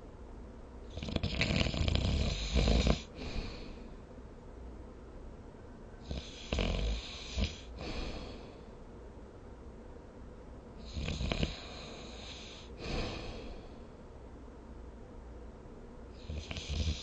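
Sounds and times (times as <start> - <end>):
person snoring: 0.9 - 3.8, 6.0 - 8.6, 10.8 - 13.6, 16.2 - 17.0.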